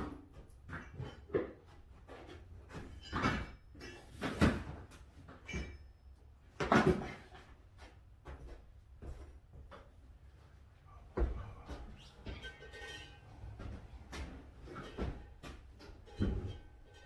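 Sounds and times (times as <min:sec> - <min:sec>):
bikes and tools clunking: 0:11.2 - 0:17.0.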